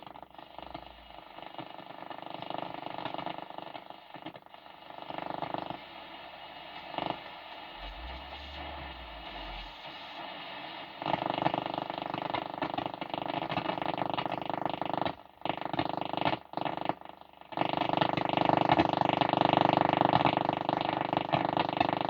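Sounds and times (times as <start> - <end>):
radio static hiss: 0.0 - 14.7
harsh buzzing radio signal: 0.4 - 1.8, 6.6 - 10.8.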